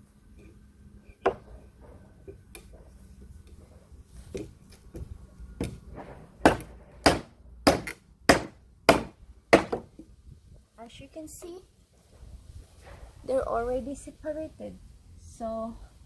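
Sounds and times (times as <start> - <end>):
hammer striking wooden boards: 1.2 - 2.0, 4.4 - 10.0.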